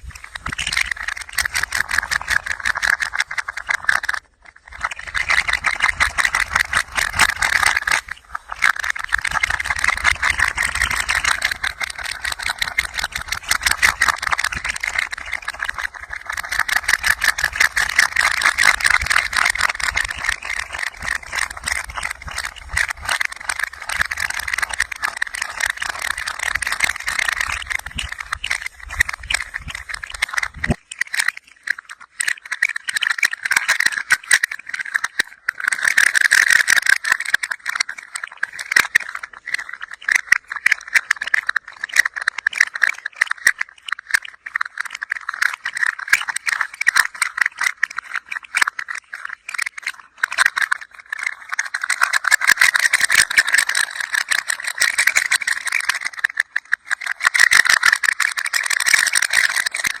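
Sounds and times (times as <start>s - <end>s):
toy rattling: 0.0s - 60.0s.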